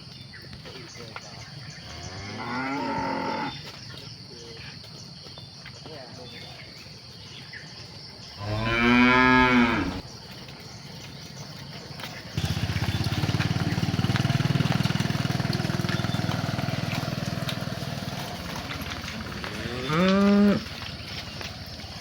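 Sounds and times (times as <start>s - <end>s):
cow mooing: 1.9s - 3.6s, 8.4s - 10.0s, 19.4s - 20.7s.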